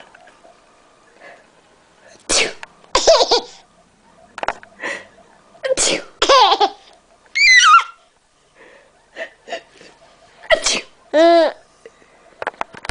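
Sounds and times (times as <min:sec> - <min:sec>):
woman sneezing: 0:05.7 - 0:06.2.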